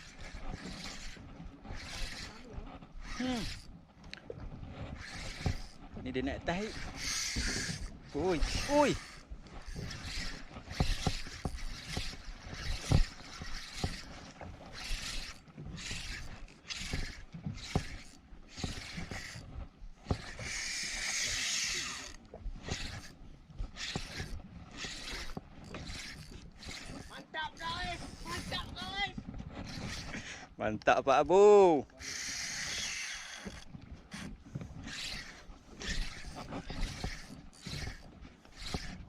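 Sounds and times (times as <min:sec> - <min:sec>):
fishing reel ratcheting: 0:00.0 - 0:03.8, 0:04.9 - 0:05.8, 0:06.5 - 0:19.5, 0:20.1 - 0:29.0, 0:29.6 - 0:30.3, 0:32.0 - 0:39.0.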